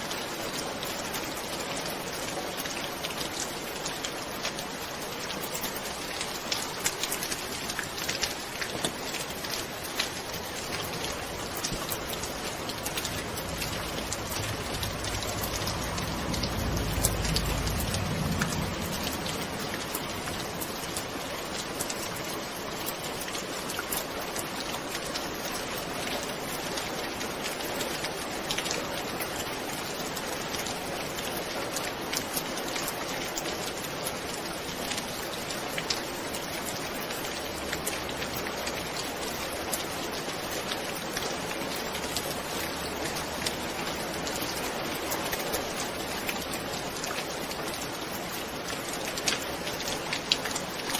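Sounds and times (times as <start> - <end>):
steady rain falling: 0.0 - 50.9
low rumble: 12.4 - 20.9.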